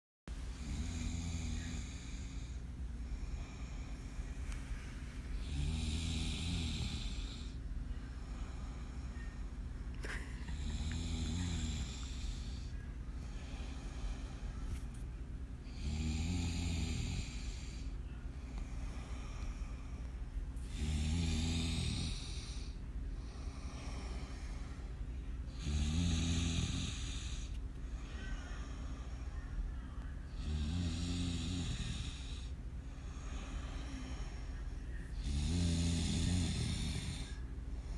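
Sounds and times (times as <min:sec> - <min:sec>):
low background hum: 0:00.3 - 0:37.9
man snoring: 0:00.5 - 0:04.2, 0:05.4 - 0:07.6, 0:10.4 - 0:12.7, 0:15.7 - 0:17.9, 0:20.6 - 0:24.5, 0:25.5 - 0:27.6, 0:30.3 - 0:34.4, 0:35.2 - 0:37.4.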